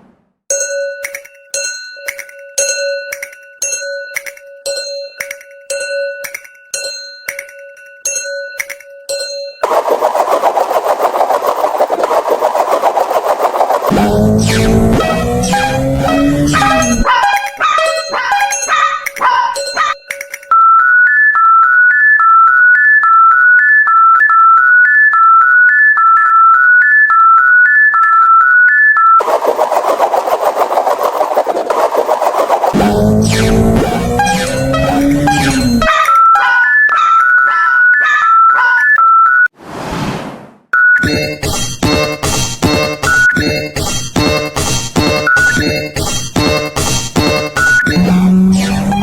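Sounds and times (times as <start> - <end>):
electronic tone melody: 13.9 - 29.2, 32.8 - 39.5, 46.6 - 49.0
level crossing warning bell: 15.3 - 24.2, 34.0 - 39.0.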